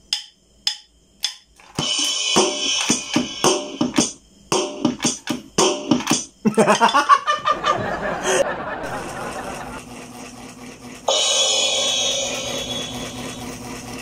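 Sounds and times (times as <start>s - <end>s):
electronic drum hits: 0.1s - 6.4s, 11.1s - 13.0s
cymbal crash: 1.8s - 6.2s, 11.1s - 13.4s.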